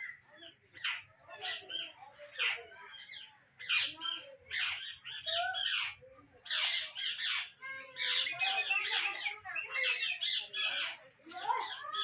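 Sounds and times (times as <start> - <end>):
parrots squawking: 0.8 - 10.9.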